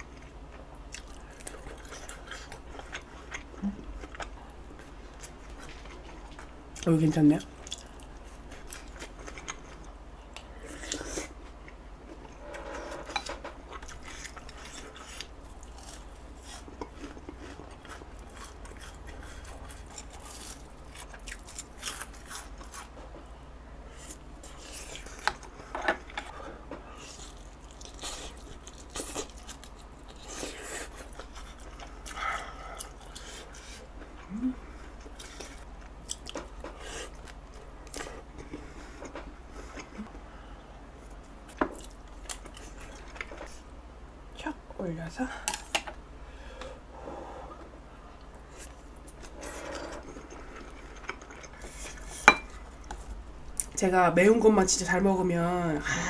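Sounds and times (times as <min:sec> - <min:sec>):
person chewing and biting food: 0:13.6 - 0:23.0, 0:26.9 - 0:40.2.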